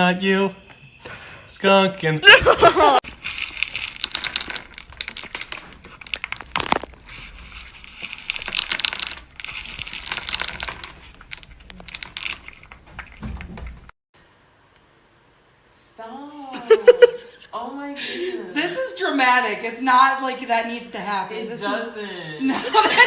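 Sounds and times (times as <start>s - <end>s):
plastic or paper crinkling: 3.0s - 13.8s.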